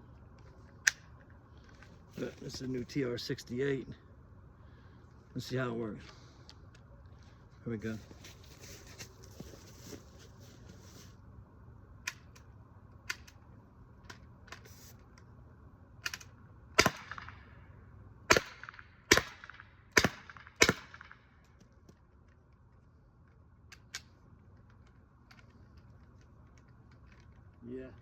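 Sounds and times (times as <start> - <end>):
air pistol shots: 16.0 - 17.6, 18.3 - 21.4.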